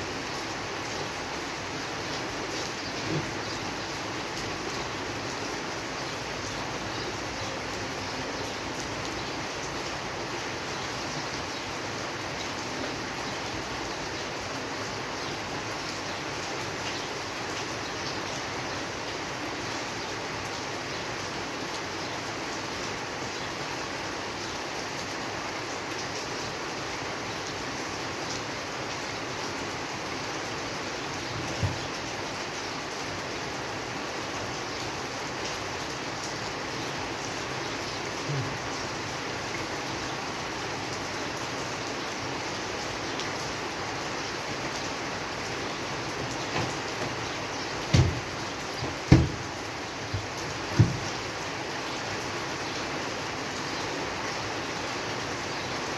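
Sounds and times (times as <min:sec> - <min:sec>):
steady rain falling: 0:00.0 - 0:55.9
brief low thump: 0:47.9 - 0:49.5.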